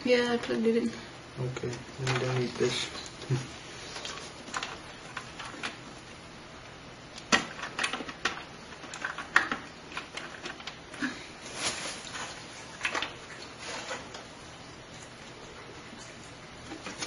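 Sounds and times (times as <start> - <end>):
handling computer parts: 1.7 - 6.1, 7.2 - 14.3, 16.6 - 17.0.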